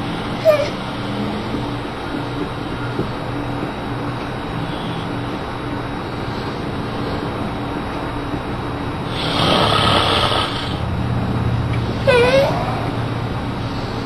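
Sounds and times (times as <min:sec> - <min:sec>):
steady low hum: 0:00.0 - 0:14.0
man snoring: 0:09.1 - 0:10.8.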